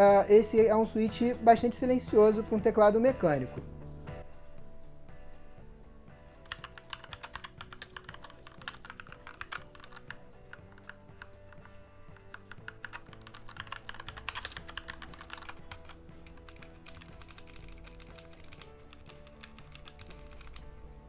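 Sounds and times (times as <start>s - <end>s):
soft background music: 0.0s - 21.0s
typing on mechanical keyboard: 6.5s - 20.9s.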